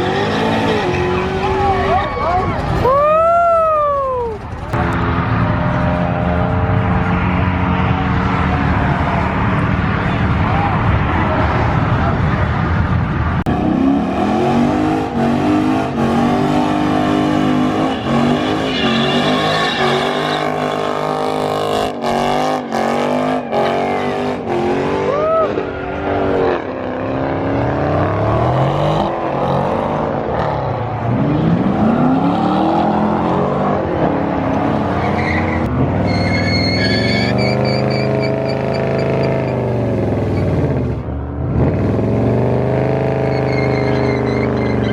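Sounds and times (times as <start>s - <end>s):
car engines revving hard: 0.0s - 3.0s, 4.5s - 44.9s
tyre squeal: 17.2s - 20.9s, 35.0s - 39.7s, 40.3s - 40.6s, 43.2s - 44.9s.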